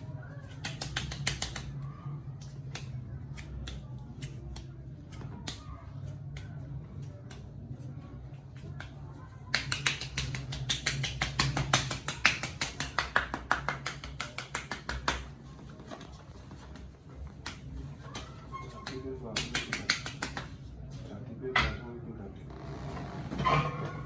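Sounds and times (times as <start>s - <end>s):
percussive massage slapping strikes: 0.6s - 1.8s, 2.4s - 7.6s, 8.6s - 15.3s, 16.7s - 20.6s.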